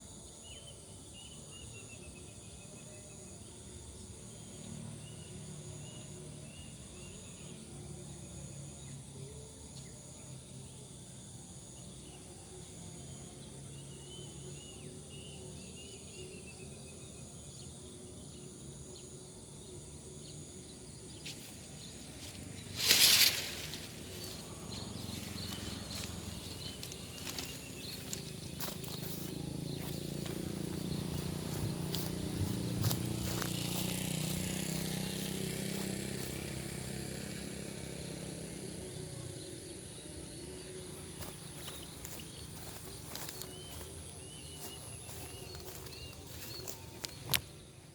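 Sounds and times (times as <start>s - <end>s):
outdoor background noise: 0.0s - 47.9s.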